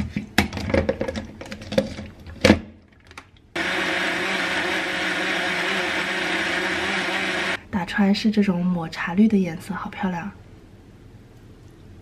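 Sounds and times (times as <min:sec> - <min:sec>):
blender motor running: 0:03.6 - 0:07.6.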